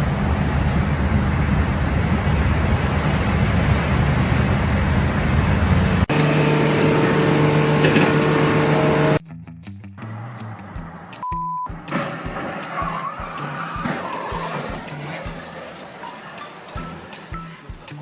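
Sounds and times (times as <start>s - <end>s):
engine humming: 0.0s - 9.2s
pitched engine hum: 0.0s - 9.2s.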